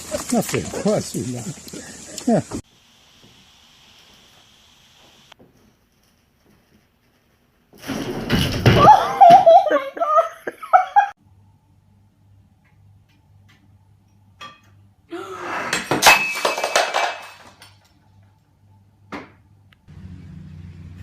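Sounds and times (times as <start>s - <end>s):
loud clatter of knocks and crashes: 7.8s - 9.6s, 15.8s - 17.8s.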